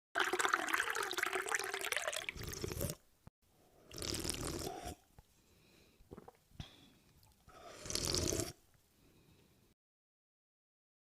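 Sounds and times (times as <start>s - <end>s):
tea pouring into a cup: 0.2s - 3.0s.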